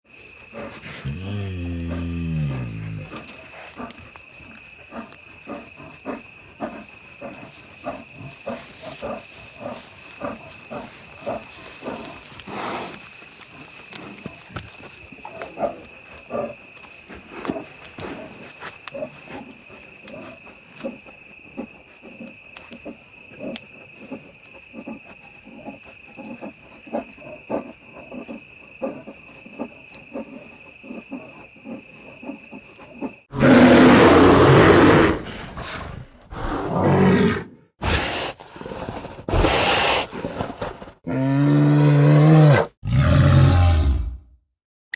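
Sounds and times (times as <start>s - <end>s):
bear grunting: 0.5s - 12.9s, 41.0s - 44.3s.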